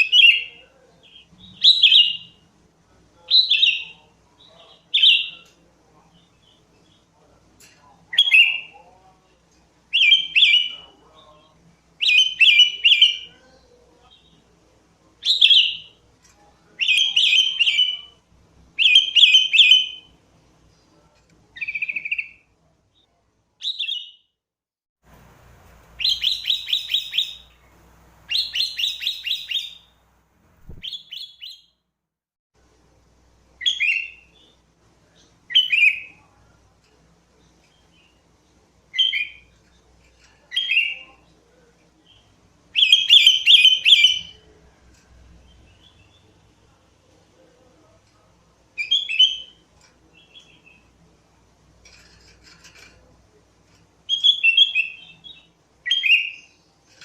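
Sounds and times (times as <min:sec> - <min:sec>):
bulbul singing whistled phrases: 0:26.0 - 0:27.6, 0:28.3 - 0:29.9, 0:30.6 - 0:31.7, 0:42.8 - 0:44.4.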